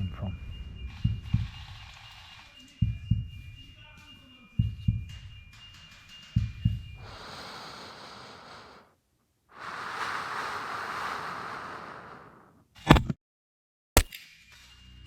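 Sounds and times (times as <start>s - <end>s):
heartbeat thumps: 0.0s - 2.1s, 2.8s - 3.6s, 4.6s - 5.5s, 6.4s - 7.1s
steady hiss: 7.0s - 12.6s.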